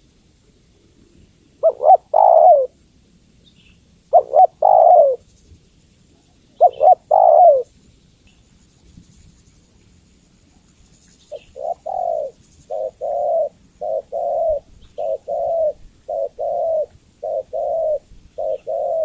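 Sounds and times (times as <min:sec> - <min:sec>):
dove cooing: 0:01.6 - 0:02.8, 0:04.1 - 0:05.2, 0:06.6 - 0:07.7, 0:11.3 - 0:19.0.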